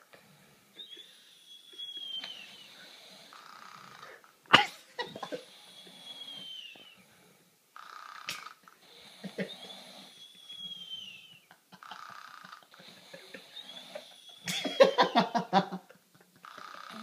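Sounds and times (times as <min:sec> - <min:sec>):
whistling snoring: 0:00.8 - 0:04.1, 0:05.4 - 0:07.2, 0:07.9 - 0:14.6.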